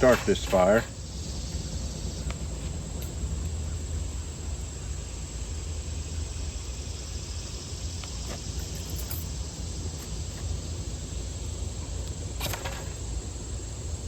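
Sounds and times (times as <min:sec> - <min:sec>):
high-pitched insect drone: 0:00.0 - 0:14.0.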